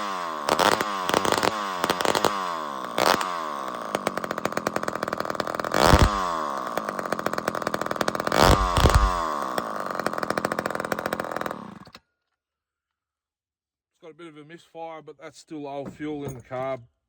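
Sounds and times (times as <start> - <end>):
chainsaw engine revving and idling: 0.0 - 12.0.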